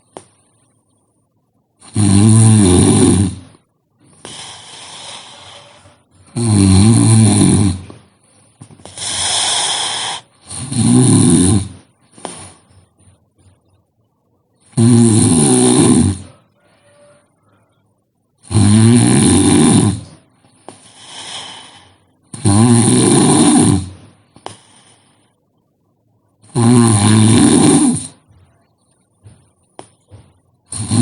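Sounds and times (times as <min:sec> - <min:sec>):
person snoring: 0:01.8 - 0:08.1, 0:08.8 - 0:12.7, 0:14.6 - 0:17.2, 0:18.4 - 0:25.3, 0:26.4 - 0:28.3, 0:30.7 - 0:31.0
breathy out-breath: 0:24.4 - 0:25.4.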